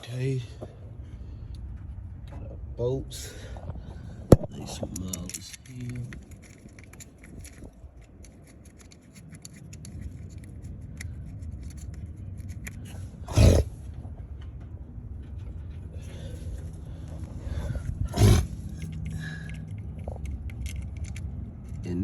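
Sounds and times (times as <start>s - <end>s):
metallic clicks and scrapes of tools: 4.6s - 13.6s, 18.2s - 22.0s.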